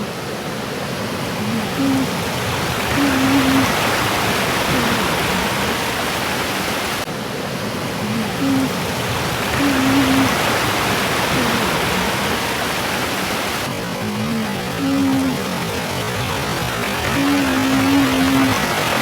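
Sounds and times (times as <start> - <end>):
faint low moaning tones: 1.4 - 5.8, 7.9 - 12.8, 13.7 - 19.0.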